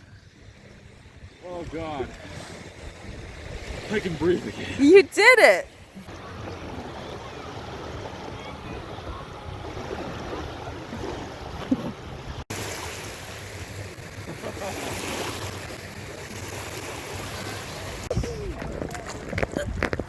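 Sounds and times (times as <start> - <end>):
wind buffeting microphone: 0.0 - 4.8, 15.6 - 20.0
waves lapping at shore: 0.0 - 20.0.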